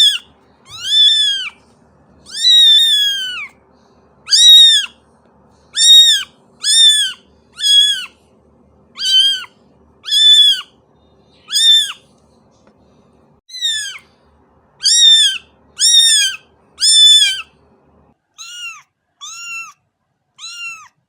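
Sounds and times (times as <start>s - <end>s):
kitten mewing: 0.0s - 1.6s, 2.3s - 3.6s, 4.3s - 5.0s, 5.7s - 8.2s, 9.0s - 10.7s, 11.5s - 12.0s, 13.5s - 14.0s, 14.8s - 17.5s, 18.4s - 19.8s, 20.4s - 21.0s.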